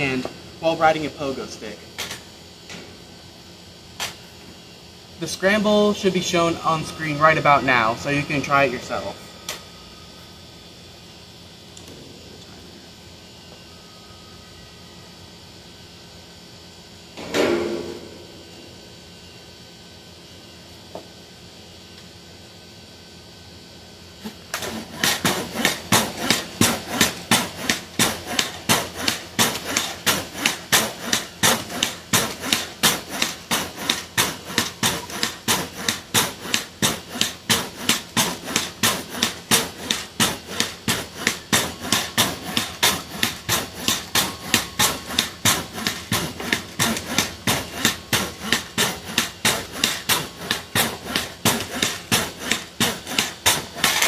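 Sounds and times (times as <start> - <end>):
pogo stick bouncing: 24.2 - 54.0.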